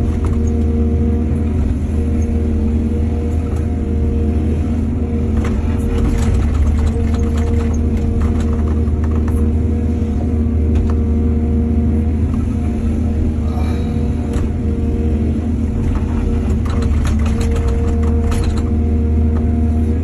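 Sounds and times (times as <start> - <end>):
excavator diesel engine running: 0.0 - 20.0
knocks and clatter: 5.4 - 9.5, 15.8 - 19.5.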